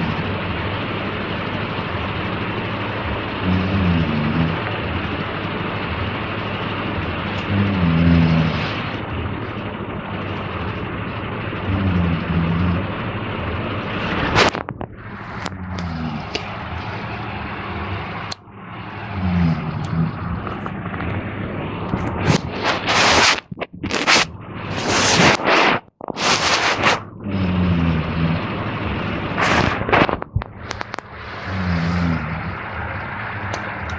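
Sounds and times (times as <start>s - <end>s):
man snoring: 3.1s - 5.1s, 7.3s - 8.9s, 11.6s - 12.9s, 15.0s - 17.1s, 19.0s - 20.7s, 31.2s - 33.9s.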